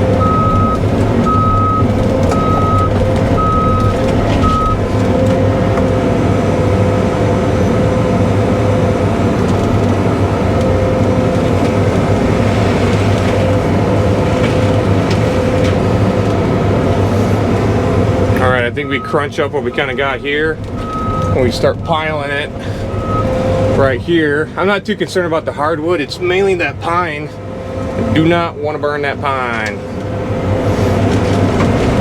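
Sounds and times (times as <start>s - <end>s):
excavator diesel engine running: 0.0s - 32.0s
travel alarm beeping: 0.1s - 4.8s, 18.8s - 22.1s, 22.9s - 23.4s.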